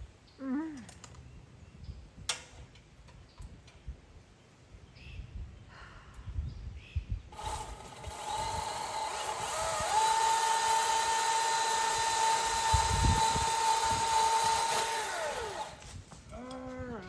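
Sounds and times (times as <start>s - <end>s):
chainsaw engine revving: 7.3s - 15.8s.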